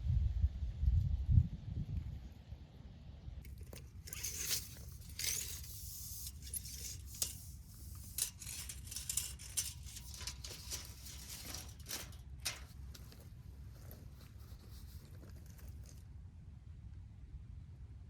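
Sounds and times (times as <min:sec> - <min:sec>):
gritty scraping and crunching: 0:03.4 - 0:16.1.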